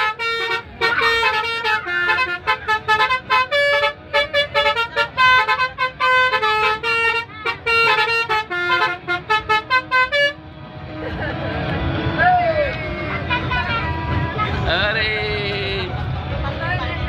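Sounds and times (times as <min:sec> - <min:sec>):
multi-tone bus horn tune: 0:00.0 - 0:10.7, 0:13.1 - 0:15.9.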